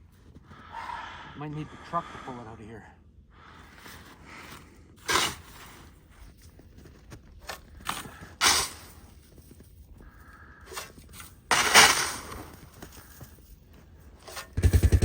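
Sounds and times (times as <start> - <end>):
footsteps crunching in snow: 5.4 - 11.4.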